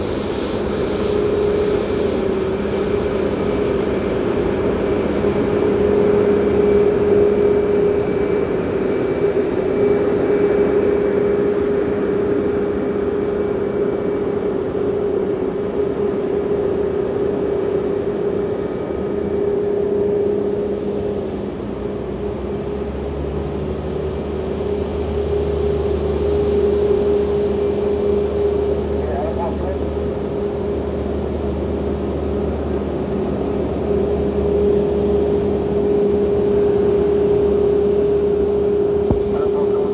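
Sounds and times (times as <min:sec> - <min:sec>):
jet engines idling: 0:00.0 - 0:39.9
deeper hum: 0:24.6 - 0:39.9.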